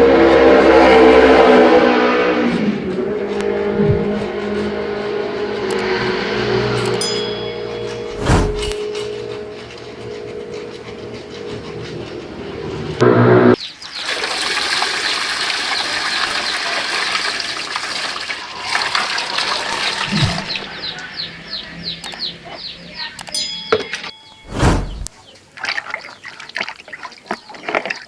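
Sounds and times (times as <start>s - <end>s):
water running and splashing: 13.8s - 20.7s, 25.2s - 28.0s.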